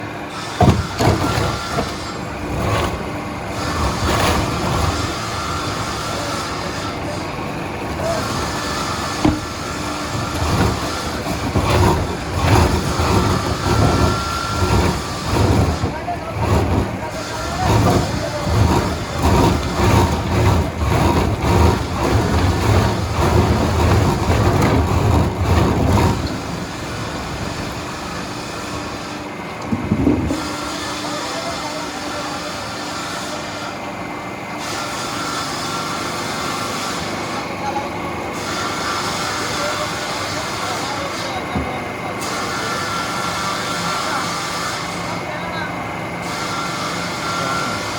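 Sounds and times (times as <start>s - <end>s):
lathe rumbling: 0.0s - 47.9s
mill machinery running: 0.0s - 47.9s
sharp knocks: 0.6s - 2.1s.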